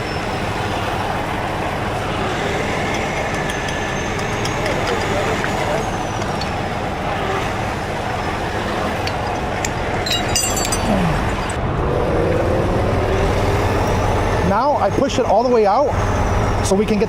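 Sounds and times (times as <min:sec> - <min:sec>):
diesel engine running: 0:00.0 - 0:17.0
sharp metal clinks: 0:09.3 - 0:11.6.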